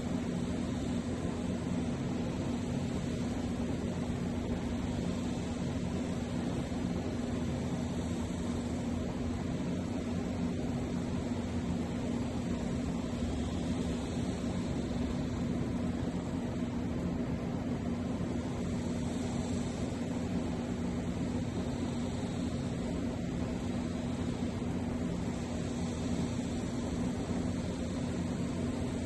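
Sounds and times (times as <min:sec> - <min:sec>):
mechanical hum with hiss: 0:00.0 - 0:29.0.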